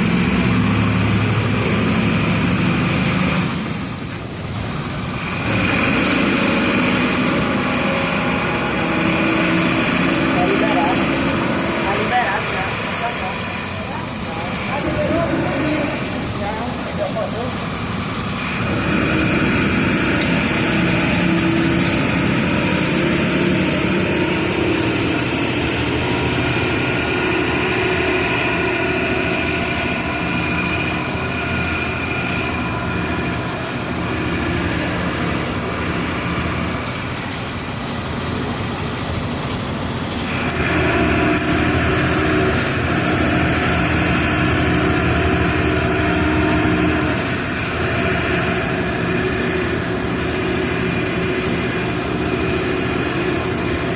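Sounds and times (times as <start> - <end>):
bus diesel engine running: 0.0 - 53.9.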